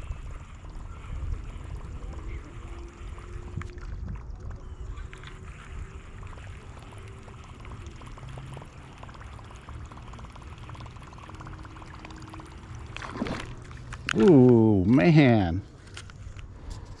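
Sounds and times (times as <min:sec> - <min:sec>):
wind buffeting microphone: 0:00.0 - 0:08.1.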